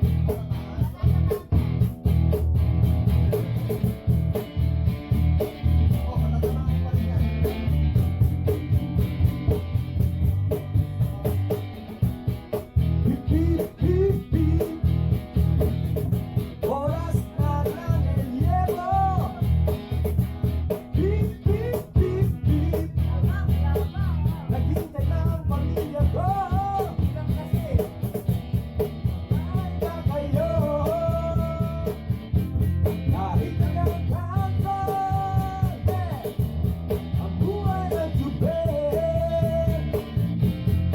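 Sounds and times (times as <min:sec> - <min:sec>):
person singing: 0:13.0 - 0:14.9, 0:16.6 - 0:19.6, 0:20.9 - 0:27.8, 0:29.3 - 0:32.0, 0:33.1 - 0:36.3, 0:37.2 - 0:40.0.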